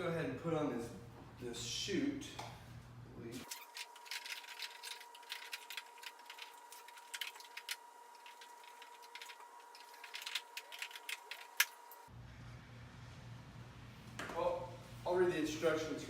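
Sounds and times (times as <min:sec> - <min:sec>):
low hum: 0:04.0 - 0:15.1.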